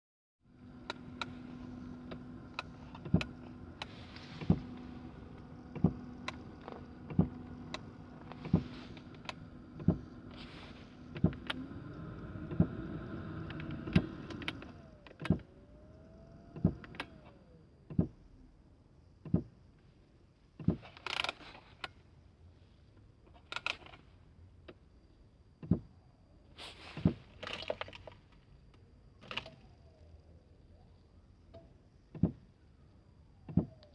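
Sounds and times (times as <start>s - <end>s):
knocking under car dashboard: 9.8s - 10.2s.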